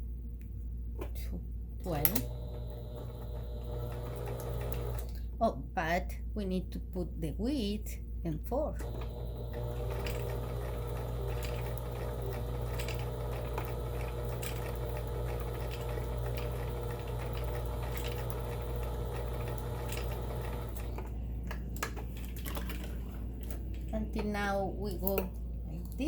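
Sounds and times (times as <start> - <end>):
sewing machine running: 1.9 - 5.2, 8.8 - 21.1.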